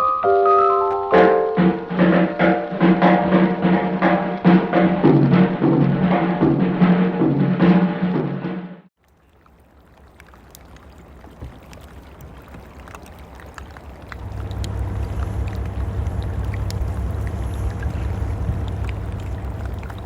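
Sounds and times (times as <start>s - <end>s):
water drips: 9.0s - 20.0s
water sloshing and splashing: 9.0s - 20.0s
low engine rumble: 14.0s - 20.0s.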